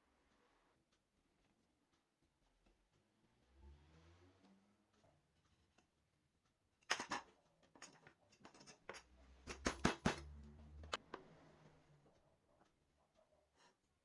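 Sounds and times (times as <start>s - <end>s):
sharp knocks and clicks: 7.9s - 11.2s.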